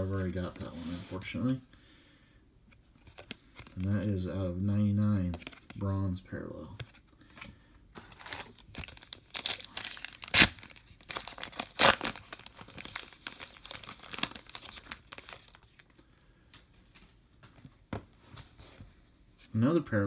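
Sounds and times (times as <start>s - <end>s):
card pack wrapper tearing: 8.0s - 15.8s
wrapper crinkling and rustling: 8.0s - 16.0s.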